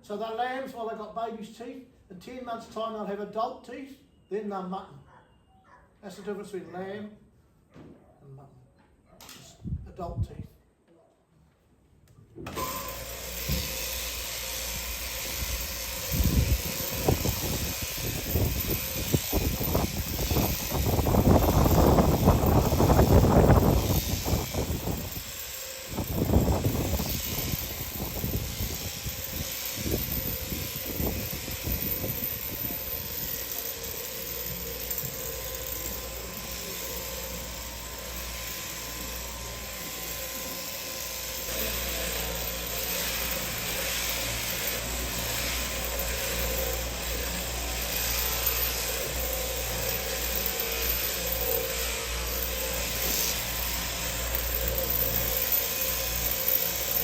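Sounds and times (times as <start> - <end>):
electric shearing handpiece running: 12.5 - 57.0.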